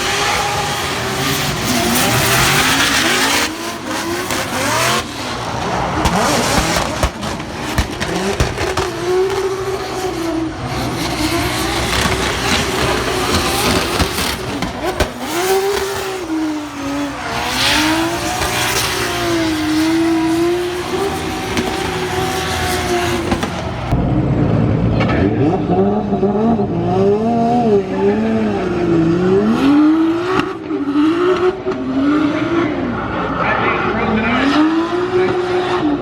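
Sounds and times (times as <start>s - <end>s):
tires squealing: 0.0s - 24.0s
car engine revving: 0.0s - 36.0s.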